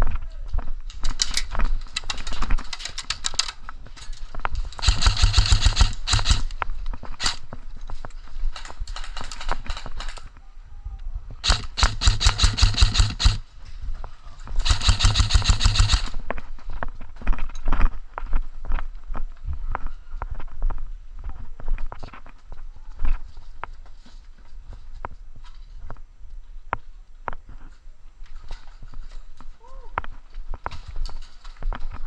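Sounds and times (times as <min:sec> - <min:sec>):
airsoft rifle full-auto bursts: 0:04.8 - 0:06.5, 0:07.2 - 0:07.4, 0:11.4 - 0:13.5, 0:14.6 - 0:16.2.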